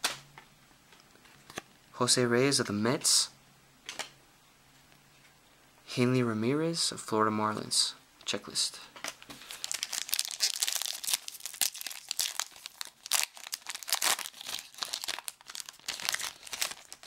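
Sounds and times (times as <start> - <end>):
plastic foil wrapper crinkling: 9.4 - 17.0.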